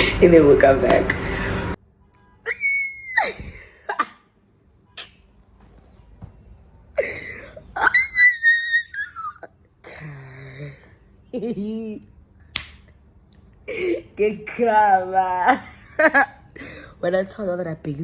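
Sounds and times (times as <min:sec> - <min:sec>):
woman screaming with excitement: 0:02.5 - 0:03.8, 0:07.8 - 0:09.3.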